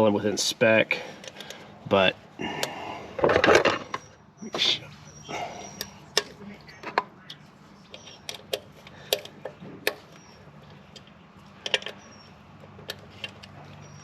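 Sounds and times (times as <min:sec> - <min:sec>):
light metallic clicks and taps of tools: 0:05.8 - 0:13.8.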